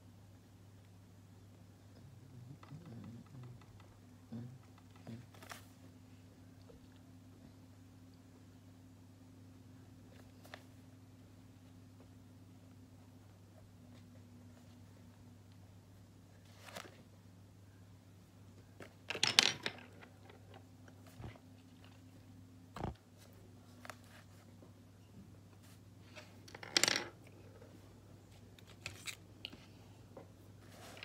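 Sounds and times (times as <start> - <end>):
steady low hum: 0.0 - 19.1.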